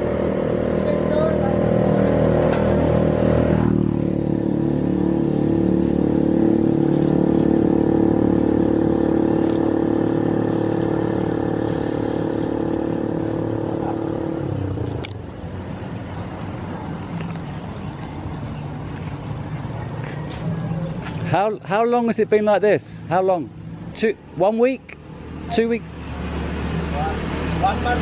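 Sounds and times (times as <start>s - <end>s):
vehicle engine running: 0.0s - 21.5s.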